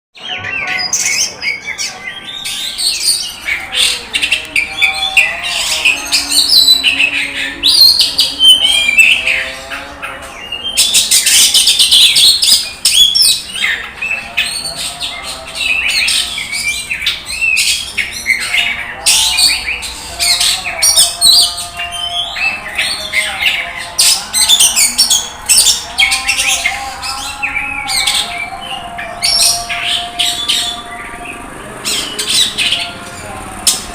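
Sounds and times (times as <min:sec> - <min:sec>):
bird singing rapid whistled song: 0:10.4 - 0:31.2.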